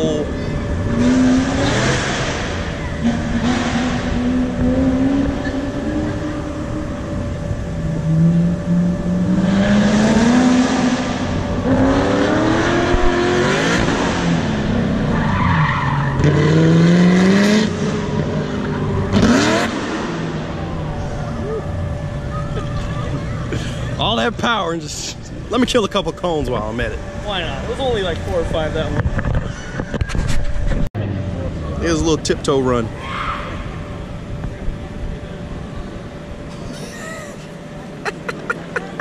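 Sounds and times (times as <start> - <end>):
car engine accelerating hard: 0.0 - 24.0.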